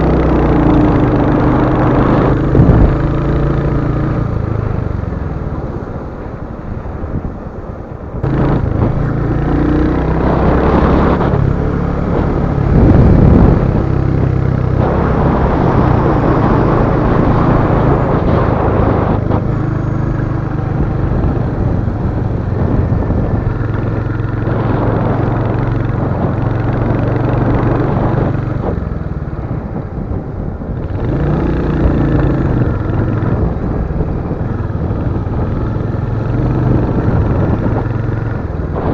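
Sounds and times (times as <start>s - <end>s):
motorcycle engine running: 0.0s - 38.9s
wind and road noise: 0.0s - 38.9s.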